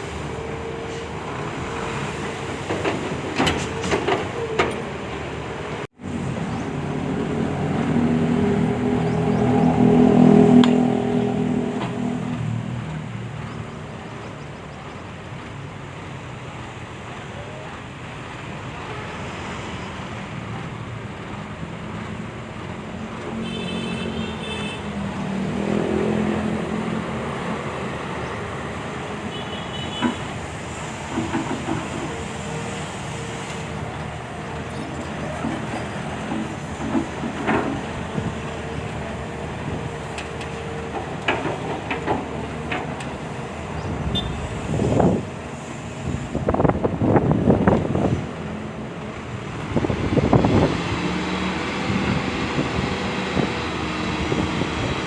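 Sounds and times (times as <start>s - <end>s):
sharp knocks and clanks: 2.6s - 4.8s, 31.1s - 32.2s, 35.3s - 38.3s, 40.2s - 43.2s
excavator diesel engine running: 30.0s - 55.0s.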